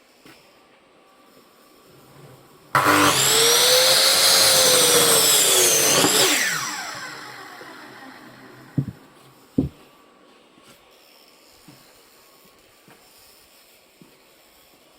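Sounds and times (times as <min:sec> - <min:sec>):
electric saw motor whining: 0:02.8 - 0:09.2.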